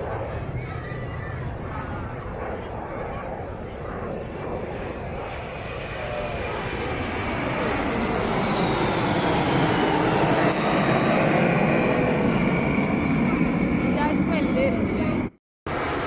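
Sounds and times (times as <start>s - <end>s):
aircraft engines flying past: 0.0s - 16.0s.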